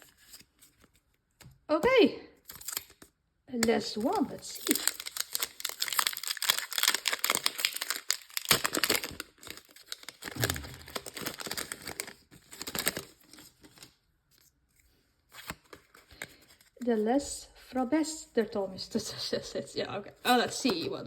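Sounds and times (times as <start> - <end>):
foil wrapper tearing and crinkling: 2.5 - 3.1, 4.0 - 13.9.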